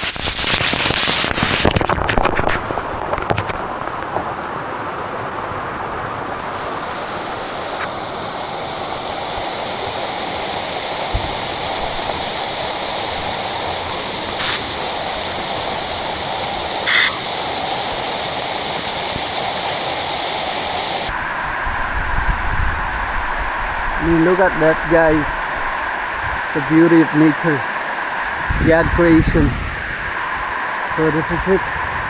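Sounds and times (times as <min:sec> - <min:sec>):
waterfall rushing: 0:00.0 - 0:21.7.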